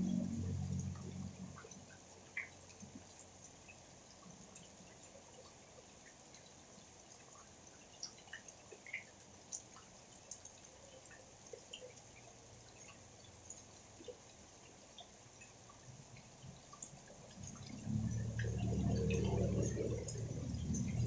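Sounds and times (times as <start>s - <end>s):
low rumble: 0.0s - 1.8s, 17.4s - 21.0s
rain dripping: 0.0s - 21.0s.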